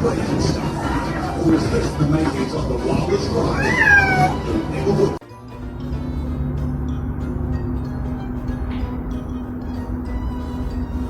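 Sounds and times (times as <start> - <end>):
background music held tones: 0.0 - 11.0
low rumble: 4.4 - 11.0.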